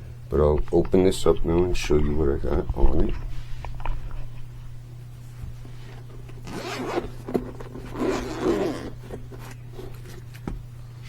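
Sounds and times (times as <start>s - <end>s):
zipper being pulled open: 6.4s - 10.3s.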